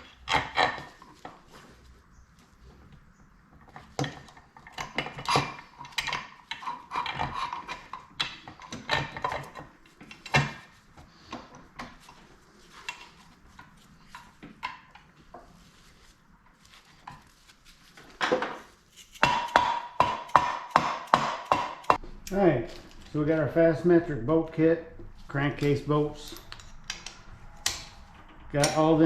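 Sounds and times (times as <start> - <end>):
metal parts and tools clinking: 25.5 - 29.0.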